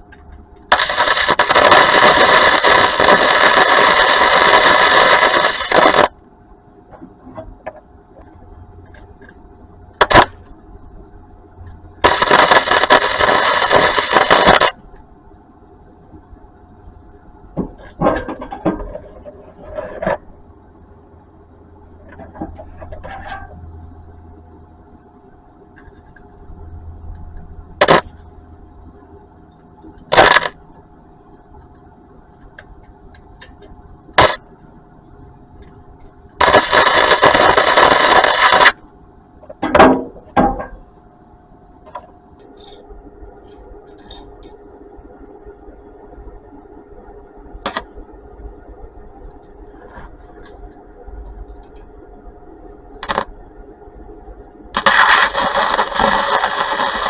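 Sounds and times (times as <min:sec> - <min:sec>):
faint steady hum: 0:00.0 - 0:57.0
arc welder bursts: 0:00.6 - 0:06.2, 0:10.0 - 0:10.5, 0:12.0 - 0:14.9, 0:27.8 - 0:28.2, 0:30.0 - 0:30.6, 0:34.1 - 0:34.5, 0:36.3 - 0:38.8, 0:53.0 - 0:53.3, 0:54.7 - 0:57.0.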